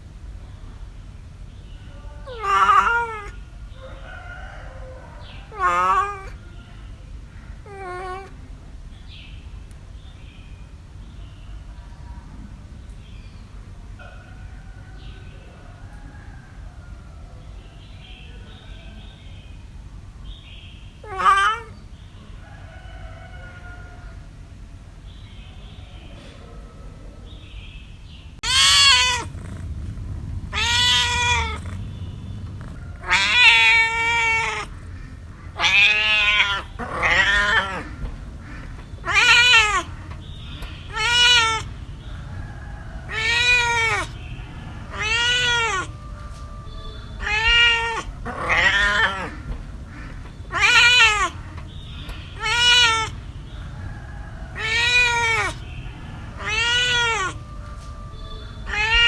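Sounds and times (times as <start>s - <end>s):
cat meowing: 2.2s - 3.4s, 5.5s - 6.4s, 7.6s - 8.4s, 21.0s - 21.8s, 28.4s - 41.8s, 43.0s - 53.2s, 54.5s - 59.0s.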